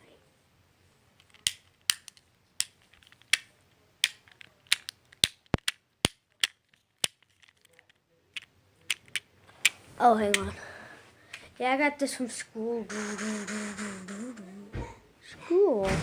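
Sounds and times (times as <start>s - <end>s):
fidget cube clicking: 1.2s - 10.5s.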